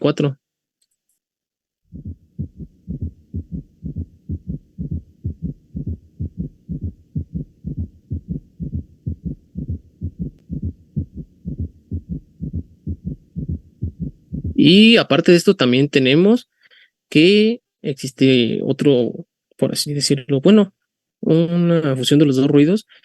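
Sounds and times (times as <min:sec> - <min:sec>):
heartbeat gallop rhythm: 0:01.9 - 0:14.7.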